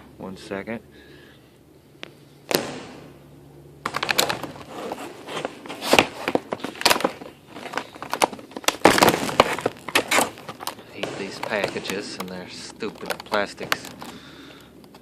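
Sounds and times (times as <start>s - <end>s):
plastic packaging crinkling: 3.9s - 15.0s.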